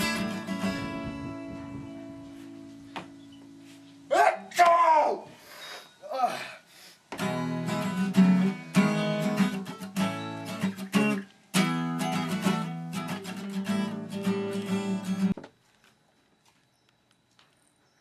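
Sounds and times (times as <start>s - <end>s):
guitar strumming chords: 0.0s - 2.7s, 7.2s - 15.4s.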